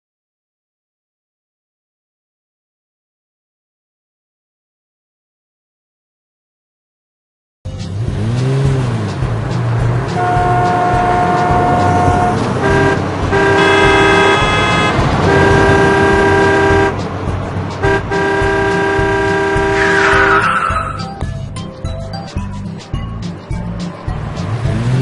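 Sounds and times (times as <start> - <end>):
low engine hum: 7.7 - 25.0
cartoon vehicle horn honking: 10.1 - 17.0, 17.8 - 21.2.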